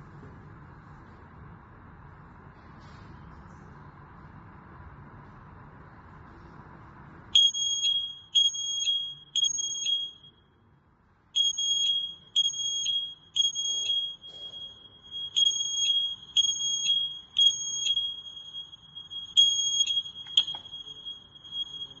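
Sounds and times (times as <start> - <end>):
smoke alarm beeping: 7.4 - 10.5, 11.4 - 22.0.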